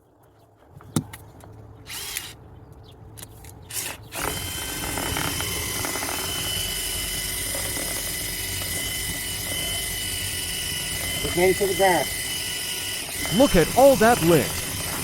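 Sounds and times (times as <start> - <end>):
power drill whining: 1.9 - 2.4, 3.7 - 15.0.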